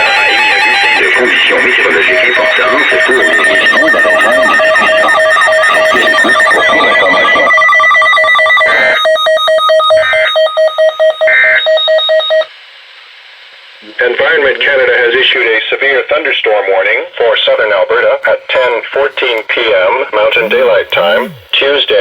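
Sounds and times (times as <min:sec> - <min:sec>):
bursts of data noise: 0:20.3 - 0:21.7
electronic tone beeping rapidly: 0:20.4 - 0:21.6.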